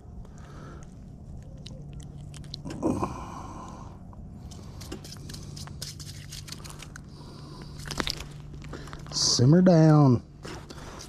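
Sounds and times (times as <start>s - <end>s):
low hum: 0.0s - 11.0s
handling scraping and rustling: 4.4s - 11.0s.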